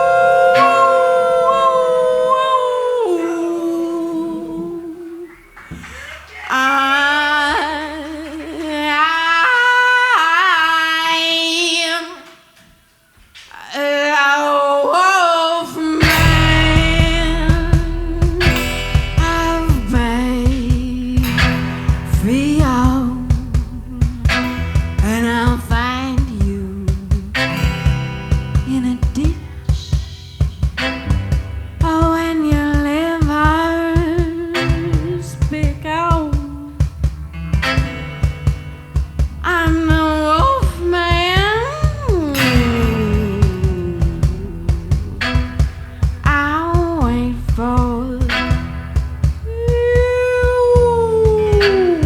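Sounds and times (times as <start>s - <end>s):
person singing wordless notes: 0.0s - 10.5s, 13.7s - 31.2s, 31.8s - 37.0s, 39.4s - 52.0s
guitar: 0.0s - 52.0s
sliding melody line: 16.0s - 26.8s
drum kit beat: 16.0s - 52.0s.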